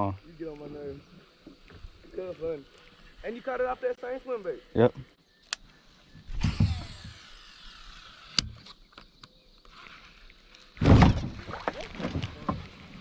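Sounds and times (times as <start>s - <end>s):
reel spool whirring: 6.3s - 8.7s.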